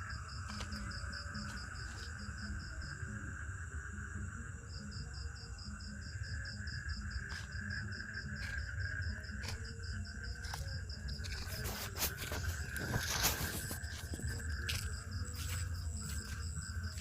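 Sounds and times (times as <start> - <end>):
insect drone: 0.0 - 17.0.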